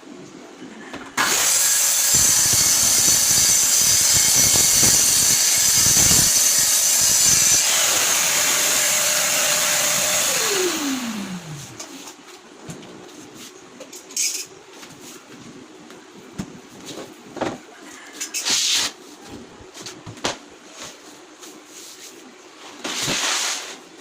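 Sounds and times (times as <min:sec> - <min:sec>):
power saw cutting wood: 0:01.2 - 0:11.8.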